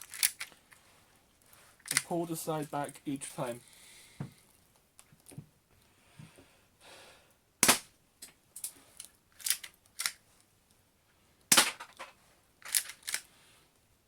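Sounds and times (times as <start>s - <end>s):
airsoft pistol firing: 7.6s - 7.9s
pistol slide scraping and clicking: 8.6s - 10.2s, 12.6s - 13.3s.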